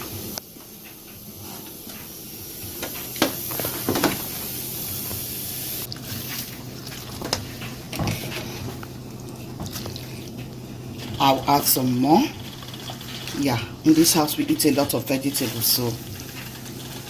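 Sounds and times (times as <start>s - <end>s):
steady hiss: 0.0s - 5.9s
utensils knocking and clattering: 2.8s - 4.3s.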